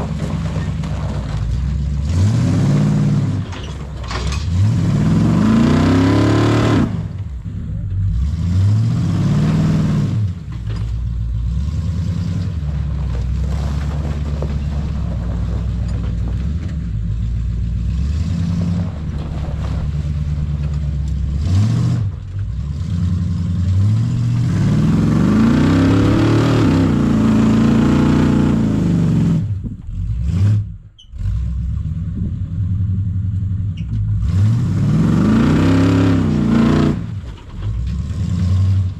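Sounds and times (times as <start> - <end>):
truck engine revving: 0.0 - 38.9.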